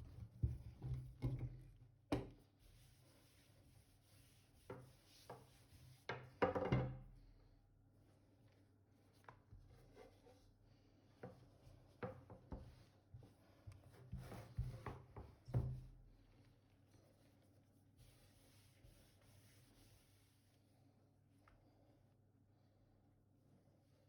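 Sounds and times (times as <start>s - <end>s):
knocks and taps working dough: 0.0s - 2.4s, 4.6s - 7.1s, 11.2s - 16.0s.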